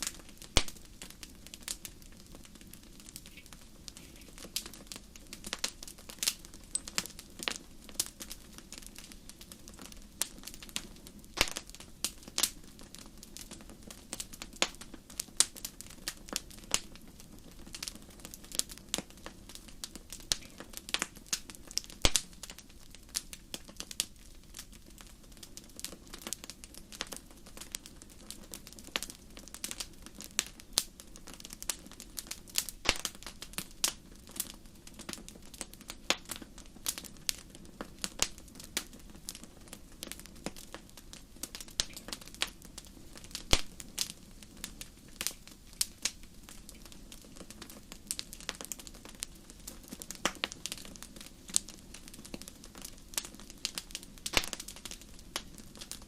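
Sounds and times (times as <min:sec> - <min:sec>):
low hiss of flame: 0:00.0 - 0:56.0
wood fire crackling and popping: 0:00.0 - 0:56.0.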